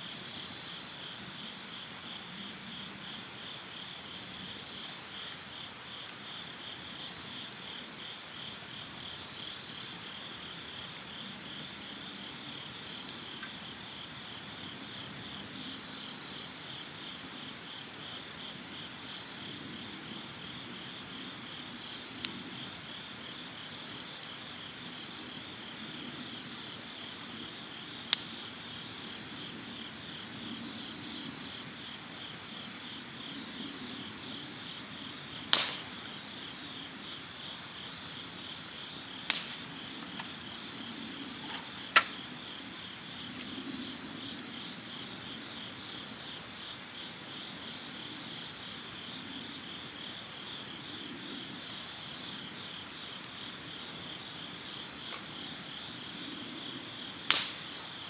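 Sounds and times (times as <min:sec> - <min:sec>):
insects trilling: 0:00.0 - 0:58.0
sharp clicks or snaps: 0:39.3 - 0:39.7, 0:57.3 - 0:57.7.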